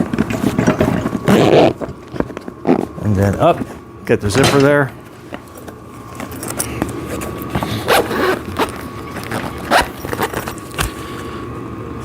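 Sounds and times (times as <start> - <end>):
zipper being pulled: 1.2 - 1.8, 7.6 - 10.6.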